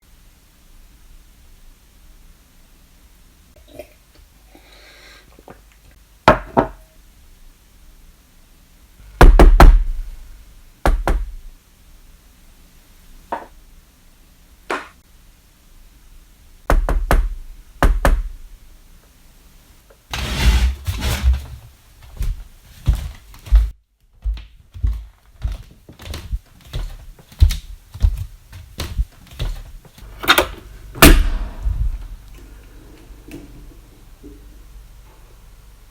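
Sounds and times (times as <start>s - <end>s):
knocking on a door: 9.2s - 9.9s, 10.9s - 11.4s, 16.7s - 18.4s
rough noise: 20.1s - 21.7s, 30.0s - 33.7s.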